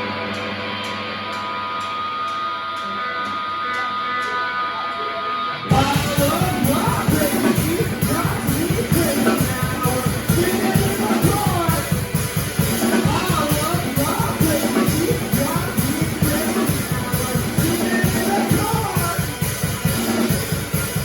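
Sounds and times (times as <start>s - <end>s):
ringing guitar notes: 0.0s - 21.0s
rock band playing live: 0.0s - 21.0s
drums with steady beat: 5.6s - 21.0s.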